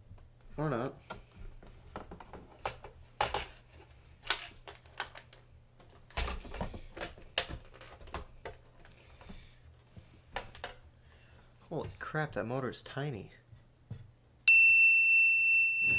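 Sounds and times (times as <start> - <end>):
hard plastic parts clicking and knocking: 1.0 - 9.4.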